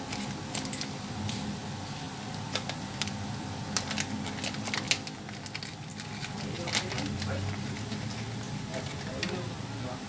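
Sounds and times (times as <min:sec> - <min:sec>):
steady low hum: 0:00.0 - 0:10.0
small hard parts clicking: 0:02.5 - 0:09.4.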